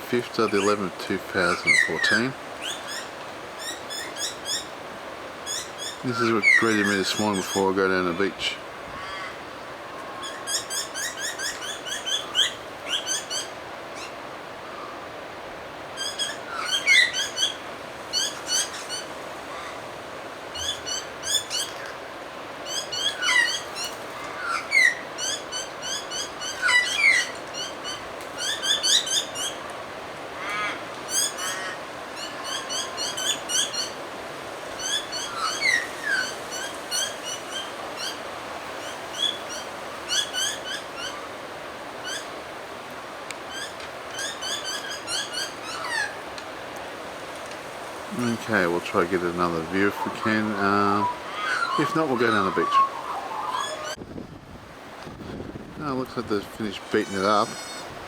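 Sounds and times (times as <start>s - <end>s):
birds chirping: 0.0s - 15.1s, 15.9s - 34.1s, 34.7s - 54.0s, 55.7s - 58.0s
lower whistled bird notes: 48.2s - 54.0s.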